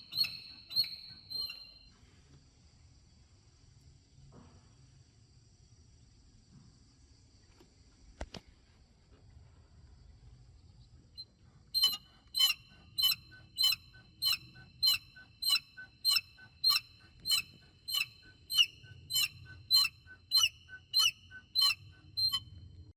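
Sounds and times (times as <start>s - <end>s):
high-pitched car chirps: 0.0s - 1.9s, 11.8s - 22.6s.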